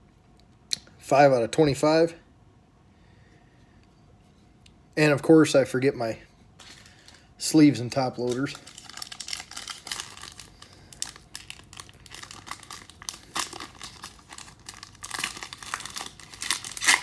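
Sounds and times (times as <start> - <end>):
plastic packaging crinkling: 6.6 - 7.3, 7.9 - 17.0.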